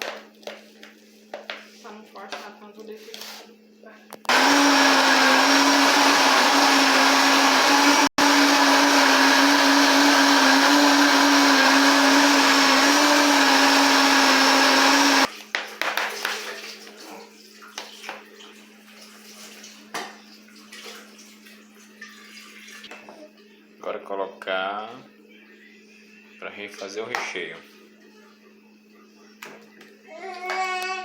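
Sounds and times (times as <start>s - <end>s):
blender running: 4.3s - 15.3s.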